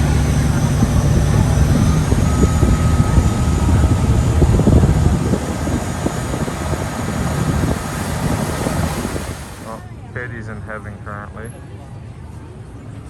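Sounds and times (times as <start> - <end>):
water rushing past: 0.0 - 9.8
wind buffeting microphone: 0.0 - 9.8
boat engine running: 0.0 - 9.9.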